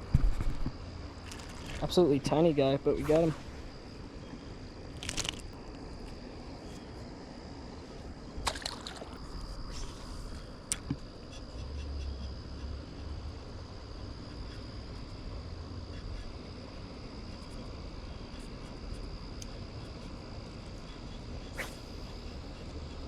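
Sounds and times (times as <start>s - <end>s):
high-pitched insect chirring: 1.2s - 4.1s.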